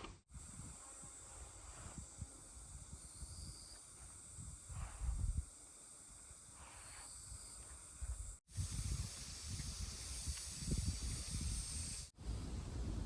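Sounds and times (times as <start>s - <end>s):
wind rumbling on microphone: 0.3s - 5.5s, 7.2s - 13.0s
steady high hiss: 0.3s - 12.4s.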